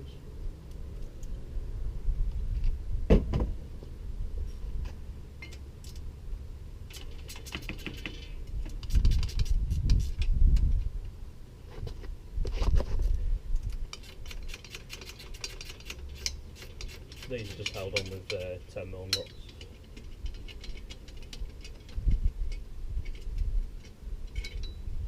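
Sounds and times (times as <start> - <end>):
metallic clinks of bicycle parts: 13.6 - 24.9.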